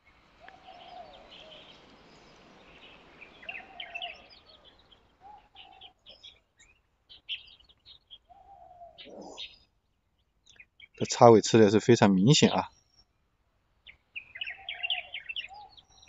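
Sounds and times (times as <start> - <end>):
background hiss: 0.0 - 8.0
rising-and-falling bird call: 0.4 - 6.4, 7.2 - 9.6, 14.2 - 16.0
high bird chirps: 0.5 - 9.7, 13.8 - 16.0.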